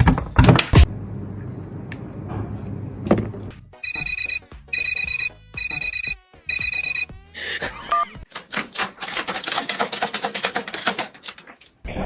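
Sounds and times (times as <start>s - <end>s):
electronic ringtone beeping: 3.8s - 8.2s.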